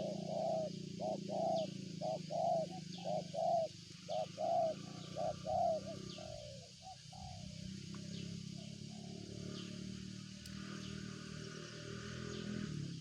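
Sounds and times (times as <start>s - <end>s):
dove cooing: 0.0s - 9.8s
steady low hum: 0.0s - 13.0s.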